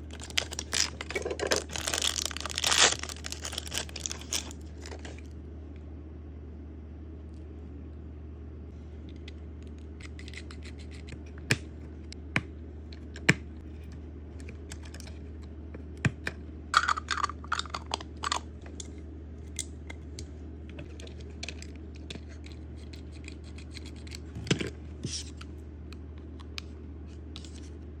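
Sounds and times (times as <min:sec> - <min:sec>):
packaging crinkling: 0:00.0 - 0:05.3
steady low hum: 0:00.0 - 0:28.0.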